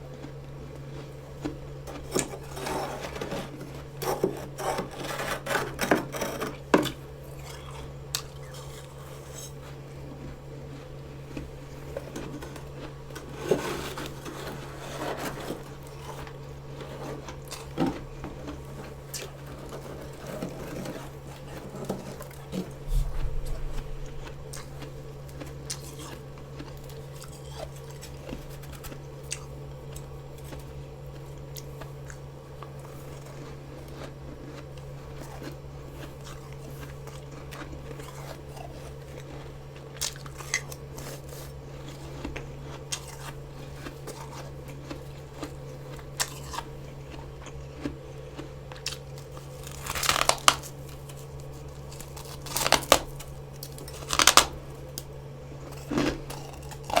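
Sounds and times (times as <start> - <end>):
frost crackling while chewed: 0.0 - 57.0
steady low hum: 0.0 - 57.0
loud crunching bites: 42.9 - 57.0.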